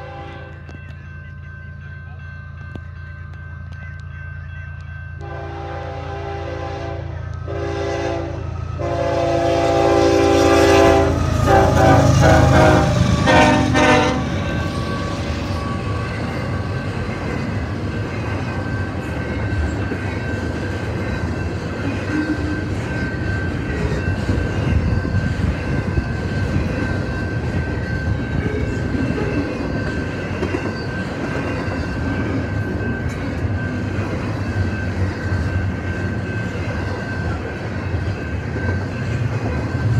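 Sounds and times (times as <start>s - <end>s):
locomotive air horn: 0.0s - 0.6s, 5.2s - 14.4s
train passing rumble: 0.0s - 39.9s.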